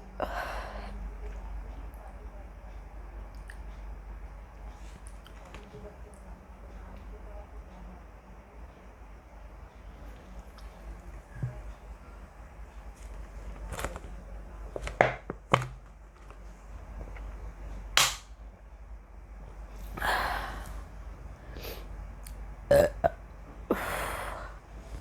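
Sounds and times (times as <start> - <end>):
woman burping: 22.7 - 24.1.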